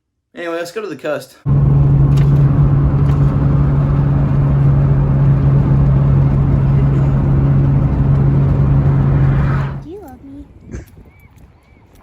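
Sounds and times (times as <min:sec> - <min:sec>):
car engine drone: 0:01.5 - 0:09.9
road rumble: 0:01.5 - 0:10.2.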